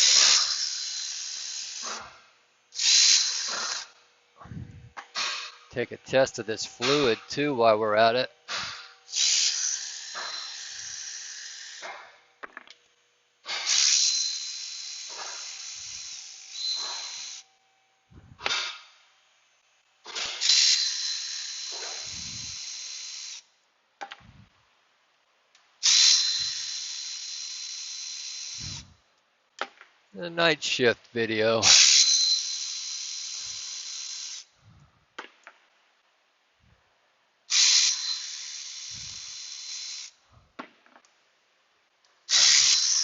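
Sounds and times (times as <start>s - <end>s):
cordless ratchet whining: 0.0s - 2.0s, 2.8s - 4.0s, 9.1s - 11.9s, 13.5s - 17.4s, 20.1s - 23.5s, 25.8s - 28.9s, 31.6s - 34.5s, 37.5s - 40.2s, 42.3s - 43.0s.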